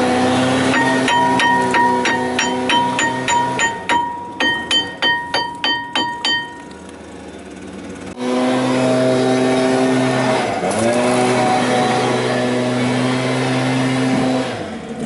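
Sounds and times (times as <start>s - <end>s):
engine-like drone: 0.0s - 15.0s
hammer striking metal disc: 0.6s - 6.8s.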